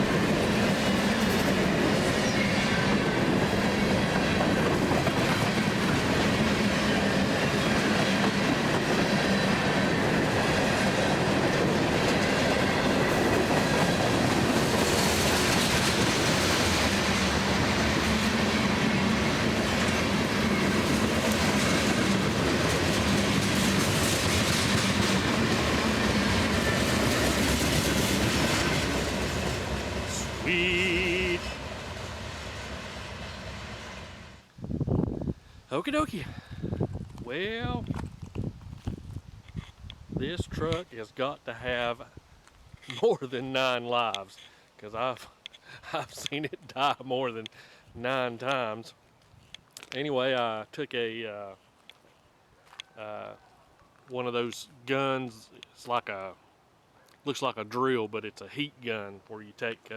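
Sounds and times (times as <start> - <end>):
train wheels rumbling on rails: 0.0 - 34.4.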